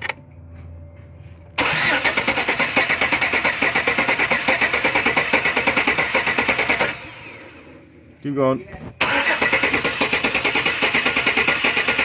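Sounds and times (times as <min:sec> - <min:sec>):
truck engine cranking on starter: 0:01.6 - 0:07.9, 0:08.9 - 0:12.0.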